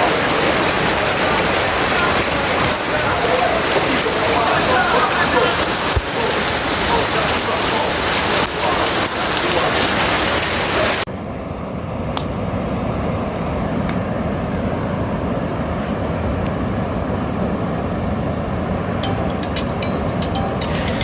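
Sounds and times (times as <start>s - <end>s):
rain hissing: 0.0s - 11.1s
rushing floodwater: 0.0s - 11.1s.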